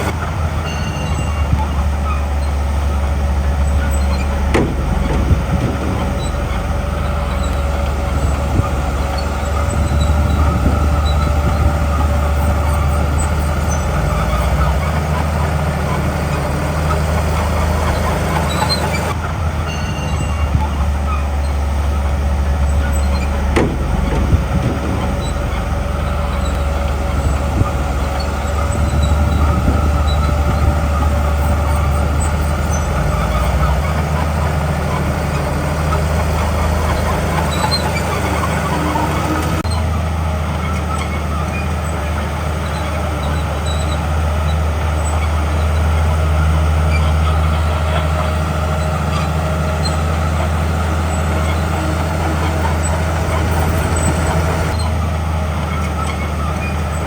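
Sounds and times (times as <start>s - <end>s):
steady whine: 0.0s - 40.0s
bulldozer diesel engine running: 0.0s - 57.0s
sharp knocks: 3.8s - 19.2s, 22.7s - 34.0s.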